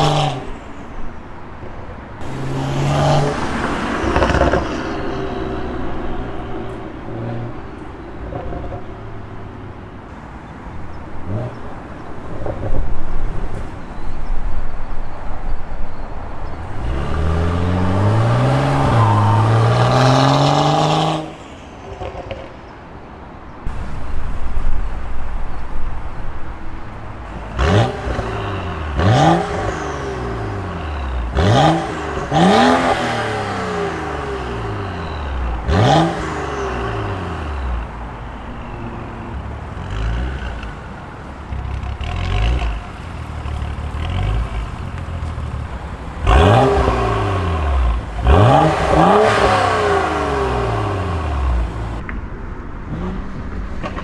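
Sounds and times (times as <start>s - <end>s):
car engine accelerating hard: 2.2s - 7.6s, 41.8s - 52.0s.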